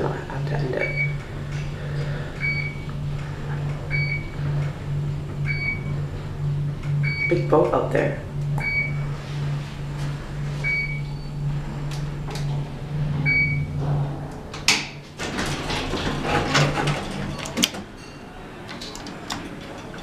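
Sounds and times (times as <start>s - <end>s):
elevator hum: 0.0s - 20.0s
sliding doors clicking and clattering: 11.6s - 20.0s.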